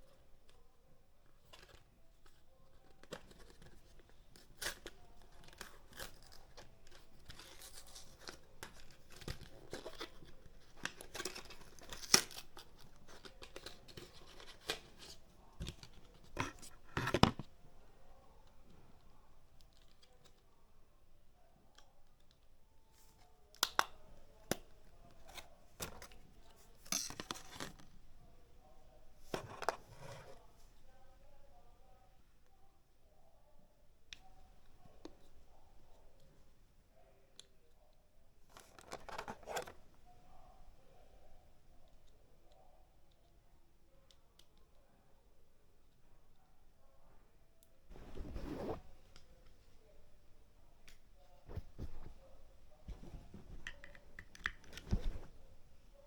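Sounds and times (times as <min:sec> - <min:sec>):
wrap crinkling: 0:47.9 - 0:49.1.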